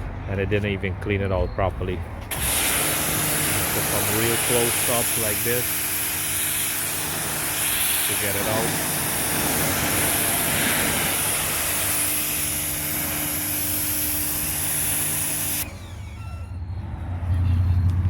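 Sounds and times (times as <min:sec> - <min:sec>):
pressure washer spraying water: 0:02.3 - 0:15.8
pump motor humming: 0:02.3 - 0:16.4.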